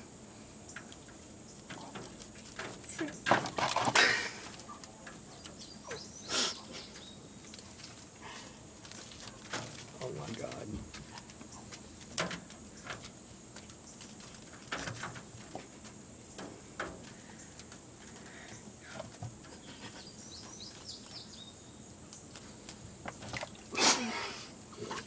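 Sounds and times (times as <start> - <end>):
faint bird chirps: 4.5 - 7.6.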